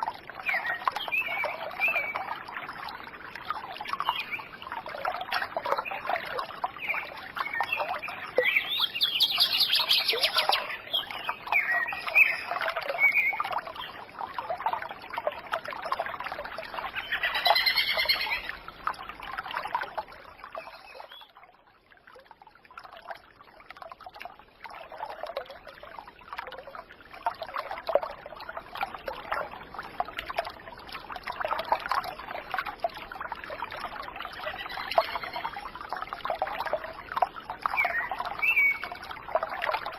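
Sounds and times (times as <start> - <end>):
birds chirping and calling: 7.6 - 13.4, 16.8 - 18.6, 34.5 - 35.5.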